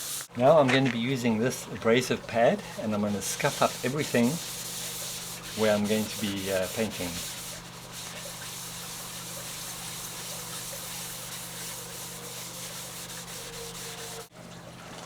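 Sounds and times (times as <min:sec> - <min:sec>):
scuff pad scrubbing car paint: 0:02.4 - 0:14.3.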